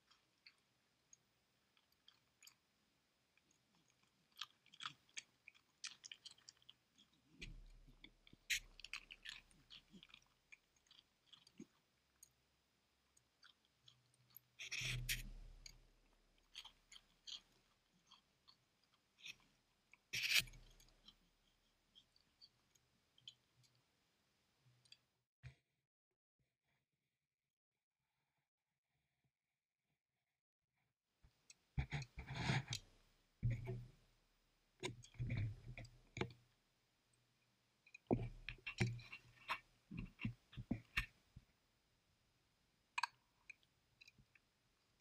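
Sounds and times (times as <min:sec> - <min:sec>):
dog chewing and crunching food: 0:03.4 - 0:11.9.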